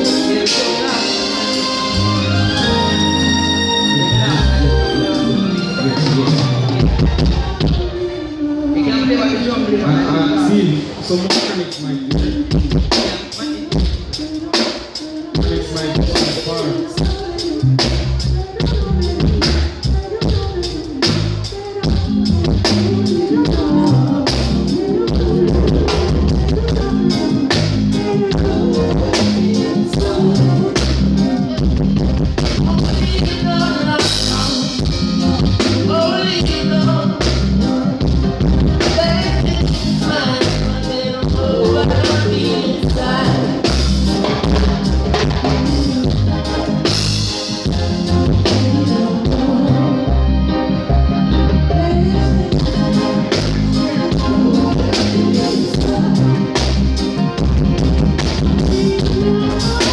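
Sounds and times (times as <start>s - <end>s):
drum kit beat: 0.0s - 8.0s, 11.2s - 49.7s, 52.4s - 59.9s
person singing: 0.0s - 59.9s
reggae band over pa: 0.0s - 59.9s
deep bass: 15.4s - 59.9s.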